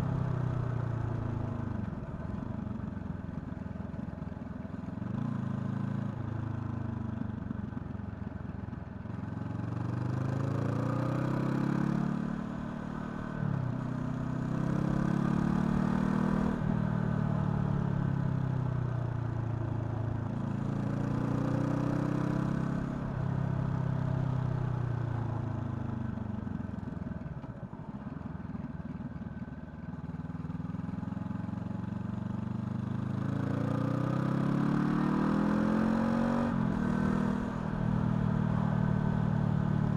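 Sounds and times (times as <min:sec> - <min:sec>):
motorcycle engine revving: 0:14.1 - 0:16.7, 0:31.6 - 0:39.9.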